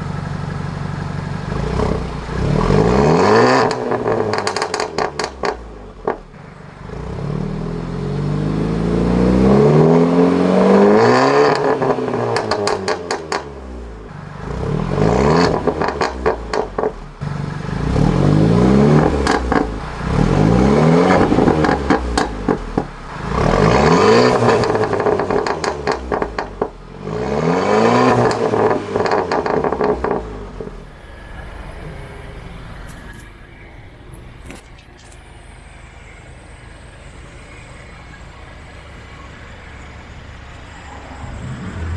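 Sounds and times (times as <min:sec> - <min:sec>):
car engine revving: 0:01.4 - 0:41.9
exhaust pops and crackles: 0:02.6 - 0:06.4, 0:11.4 - 0:13.5, 0:15.3 - 0:17.2, 0:19.0 - 0:19.9, 0:21.0 - 0:26.9, 0:28.1 - 0:41.9.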